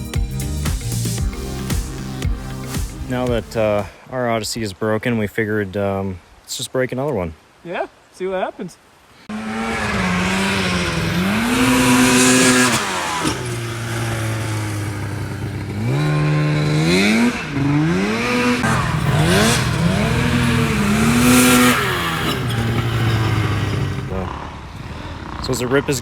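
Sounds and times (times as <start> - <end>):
two-stroke engine revving: 9.3 - 25.8.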